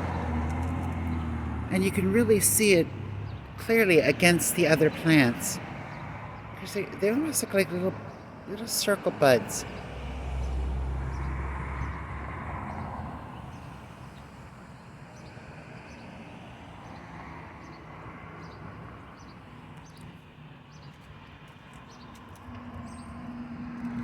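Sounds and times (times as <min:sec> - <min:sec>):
road traffic hum: 0:00.0 - 0:24.0
small birds chirping: 0:17.6 - 0:23.1.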